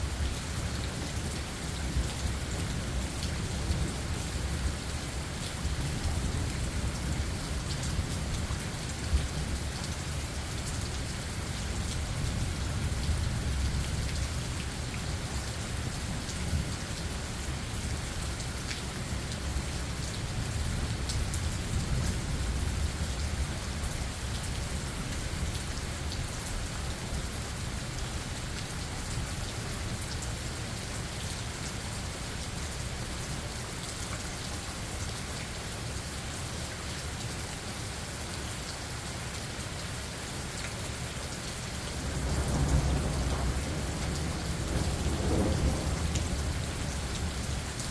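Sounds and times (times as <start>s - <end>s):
steady rain: 0.0s - 47.9s
low thunder rumbling: 42.0s - 47.8s
raindrop ticks: 42.2s - 47.9s.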